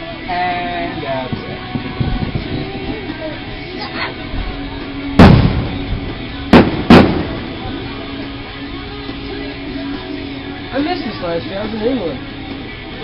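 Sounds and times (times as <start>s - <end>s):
background music: 0.0s - 13.0s
fireworks bursting with bangs: 0.8s - 9.5s.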